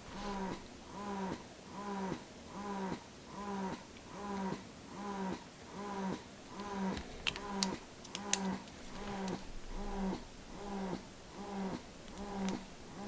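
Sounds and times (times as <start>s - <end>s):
sharp clicks: 12.1s - 12.7s.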